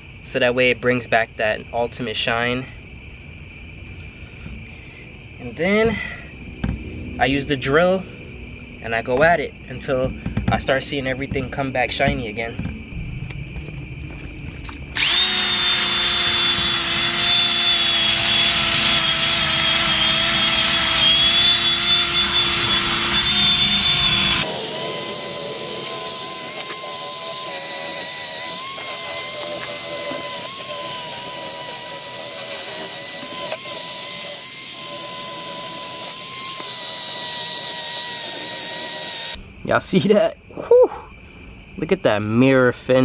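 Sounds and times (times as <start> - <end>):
power drill polishing: 15.0 - 39.4.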